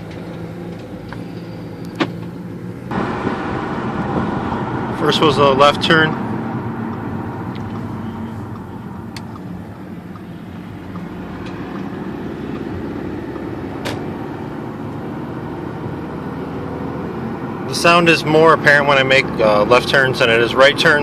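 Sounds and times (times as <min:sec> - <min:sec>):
car engine and road noise: 0:00.0 - 0:21.0
sharp clicks from car: 0:06.8 - 0:14.2.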